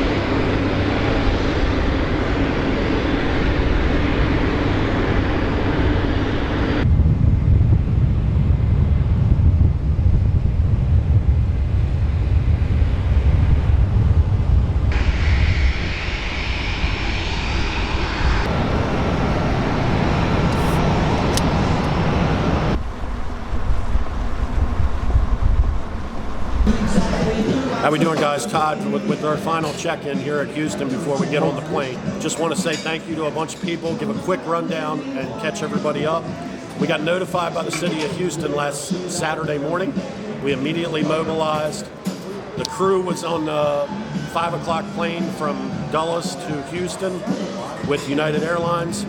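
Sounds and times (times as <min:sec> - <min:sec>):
engine or machinery noise: 0:00.0 - 0:27.4.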